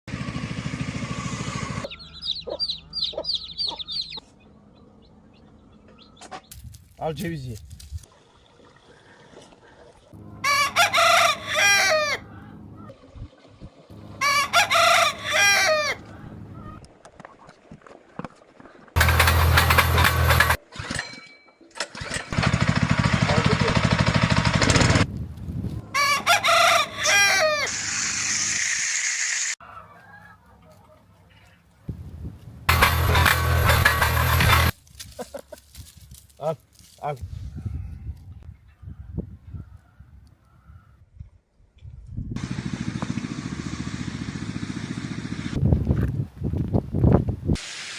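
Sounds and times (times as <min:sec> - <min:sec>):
loud running motor: 0:00.1 - 0:01.9, 0:19.0 - 0:20.6, 0:22.3 - 0:25.1, 0:42.4 - 0:45.6
chicks peeping: 0:01.8 - 0:06.5
rooster crowing: 0:10.2 - 0:12.6, 0:14.2 - 0:16.7, 0:25.9 - 0:27.8
steady hiss: 0:47.6 - 0:47.9.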